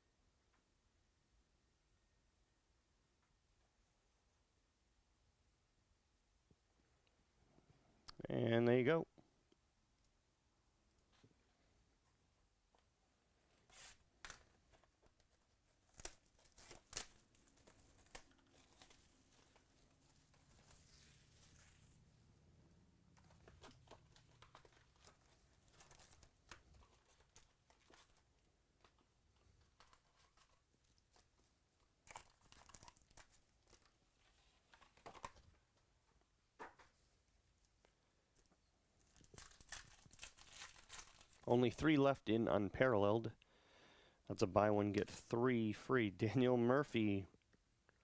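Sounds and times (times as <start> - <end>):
card pack wrappers tearing: 15.8 - 22.0, 23.2 - 28.2, 32.0 - 33.9, 39.1 - 41.4.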